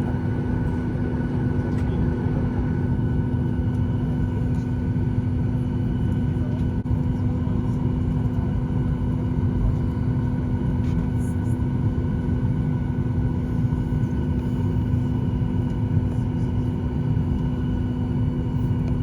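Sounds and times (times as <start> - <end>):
constant droning tone: 0.0 - 19.0.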